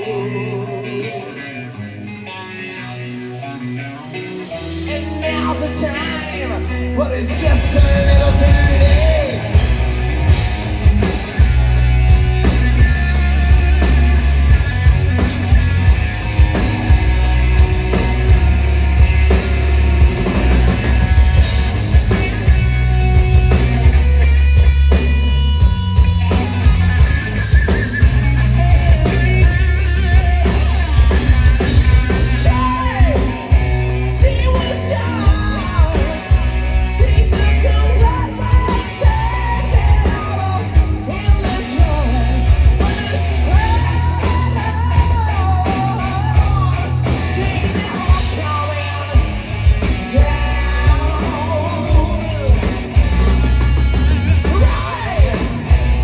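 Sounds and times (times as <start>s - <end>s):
person singing: 0.0s - 1.8s, 4.4s - 9.9s, 32.2s - 53.6s, 54.4s - 56.0s
rock band playing bluesy ballad: 0.0s - 56.0s.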